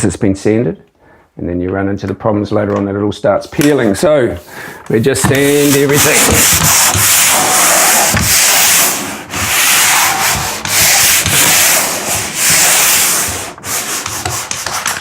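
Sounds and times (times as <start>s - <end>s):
sandpaper scratching on wall: 4.9s - 15.0s.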